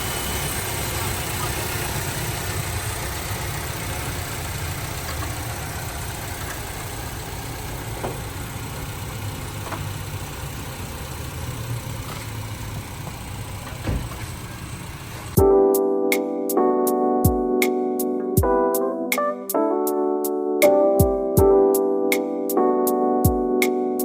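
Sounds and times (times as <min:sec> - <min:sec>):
car engine idling: 0:00.0 - 0:15.4.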